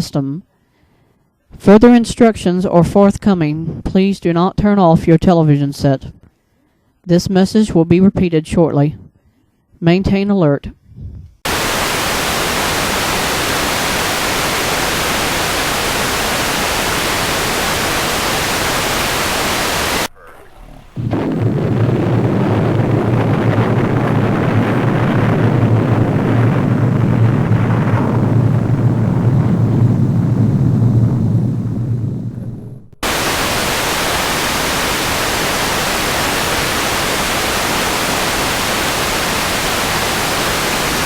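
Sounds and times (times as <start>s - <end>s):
loud static hiss: 11.5s - 20.1s, 33.0s - 41.0s
deep bassy rumbling noise: 11.5s - 41.0s.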